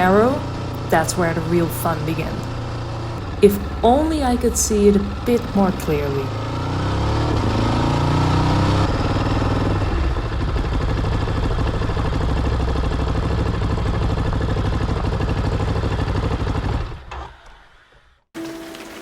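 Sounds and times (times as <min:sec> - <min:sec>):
motorcycle engine running at low revs: 0:00.0 - 0:17.4
music: 0:18.4 - 0:19.0.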